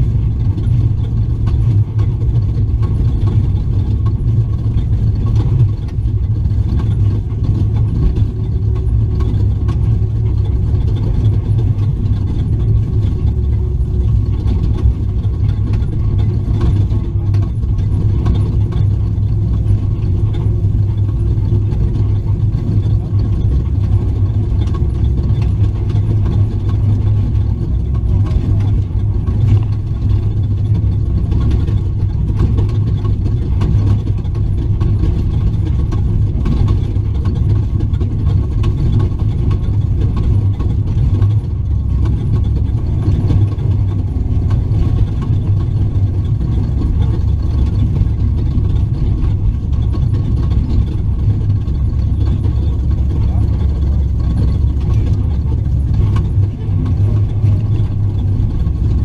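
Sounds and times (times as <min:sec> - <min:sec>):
truck engine running: 0:00.0 - 0:59.0.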